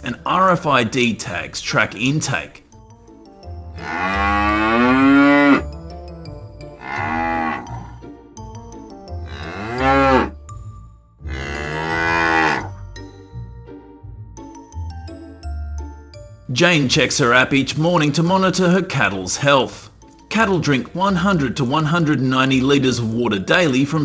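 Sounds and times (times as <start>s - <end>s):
cattle mooing: 3.7s - 5.7s, 6.7s - 8.0s, 9.2s - 10.4s, 11.2s - 12.8s.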